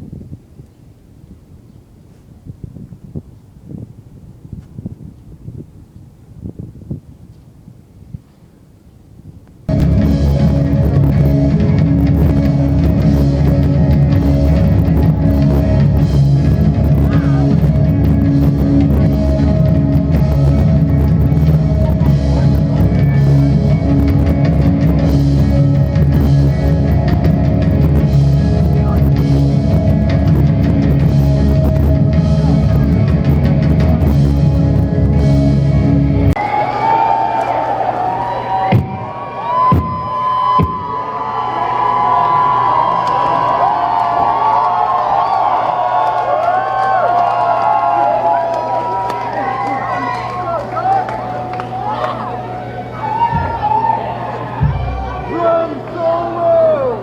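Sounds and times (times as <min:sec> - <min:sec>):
faint wind: 0:00.0 - 0:36.4
heavy rock band playing live: 0:09.7 - 0:36.3.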